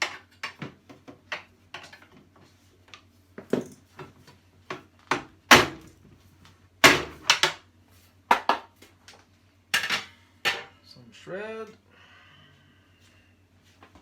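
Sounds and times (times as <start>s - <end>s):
low steady hum: 8.8s - 14.0s.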